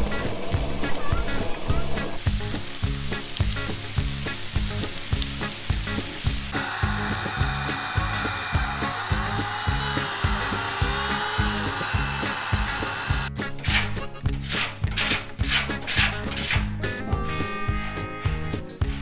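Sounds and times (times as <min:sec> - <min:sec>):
steady hissing noise: 0:00.0 - 0:13.3
music with steady beat: 0:00.0 - 0:19.0.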